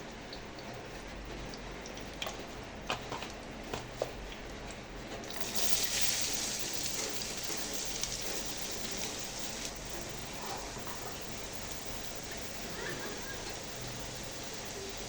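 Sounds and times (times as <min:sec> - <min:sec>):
cooking pot hissing: 0:05.2 - 0:15.0.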